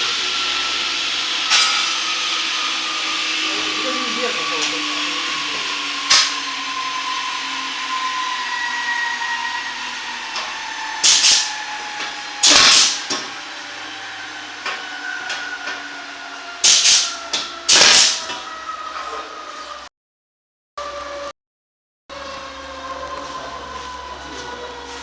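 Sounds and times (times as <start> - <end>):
workshop machinery whine: 0.0 - 19.9, 22.1 - 25.0
loud hissing bursts: 11.0 - 11.5, 12.4 - 13.0, 16.6 - 17.1, 17.7 - 18.2.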